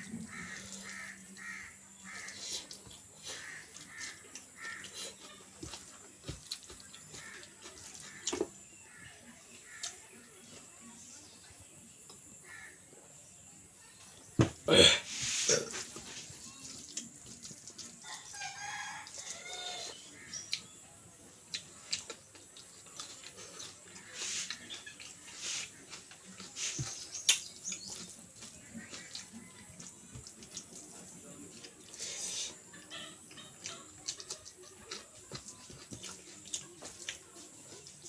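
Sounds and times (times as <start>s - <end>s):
rooster crowing: 18.0s - 20.0s.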